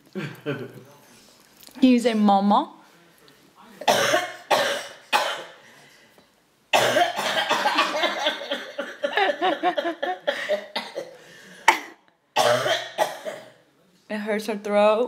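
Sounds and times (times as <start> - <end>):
person coughing: 3.8 - 5.6, 6.8 - 13.6.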